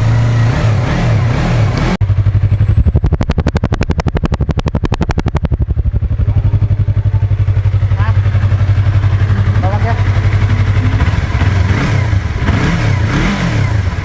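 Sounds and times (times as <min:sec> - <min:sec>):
motorcycle engine revving and idling: 0:00.0 - 0:14.0.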